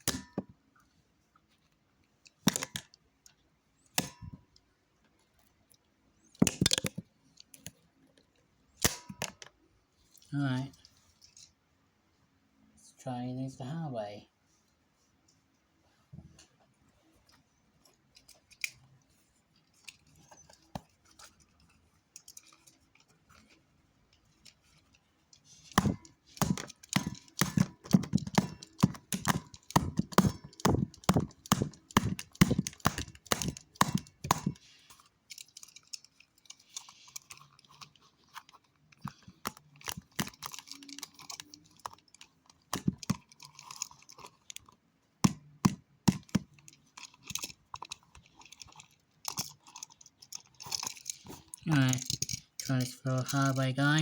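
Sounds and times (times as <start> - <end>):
hard objects clicking and knocking: 0.0 - 0.6, 2.3 - 3.0, 3.8 - 4.5, 6.2 - 8.2, 8.8 - 9.6, 24.2 - 54.0.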